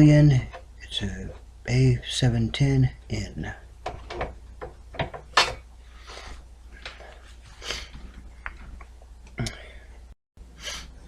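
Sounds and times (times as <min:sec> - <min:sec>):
computer case knocks and clicks: 0:03.8 - 0:05.6.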